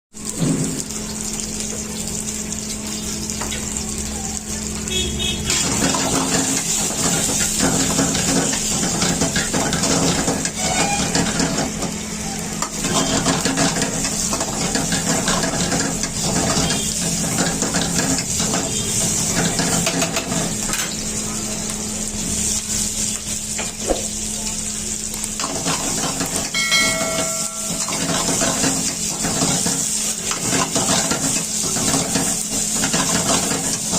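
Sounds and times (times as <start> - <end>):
food sizzling in a wok: 0.1 - 33.9
metal ladle scraping a pan: 10.1 - 11.6.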